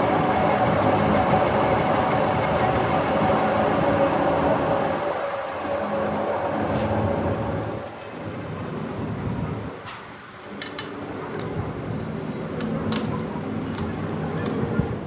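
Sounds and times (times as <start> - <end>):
workshop machinery humming: 0.0 - 8.8.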